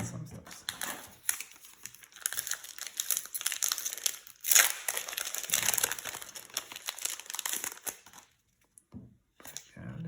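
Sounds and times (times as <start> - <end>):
foil wrapper crinkling: 0.7 - 8.4.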